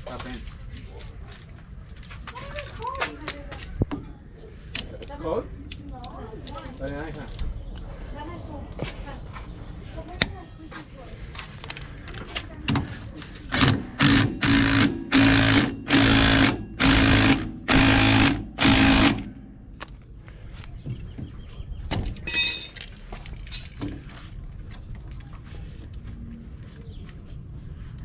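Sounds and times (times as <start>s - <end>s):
pneumatic impact wrench bursts: 13.5s - 19.4s
metal clink: 22.2s - 23.8s.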